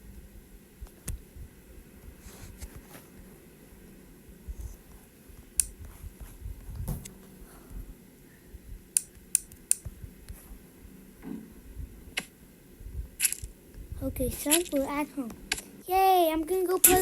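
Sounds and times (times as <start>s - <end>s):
low handling rumbles: 0.0s - 17.0s
sharp clicks and light taps: 0.8s - 2.8s, 4.6s - 7.2s, 8.9s - 10.4s.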